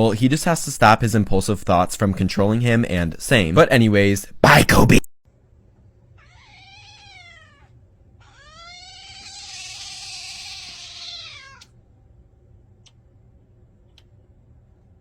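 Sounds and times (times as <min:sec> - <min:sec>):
cat meowing: 0:06.2 - 0:11.7.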